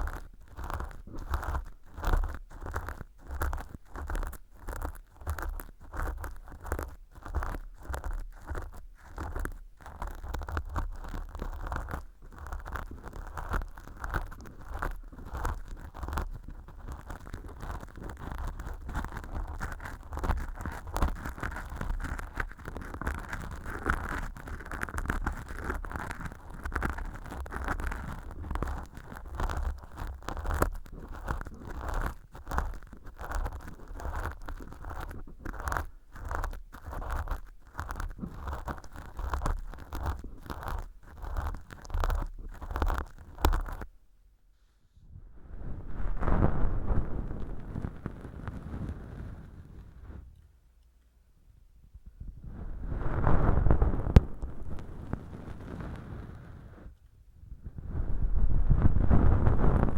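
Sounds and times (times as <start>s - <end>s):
earpick scratching: 0.0s - 44.0s, 52.6s - 56.6s.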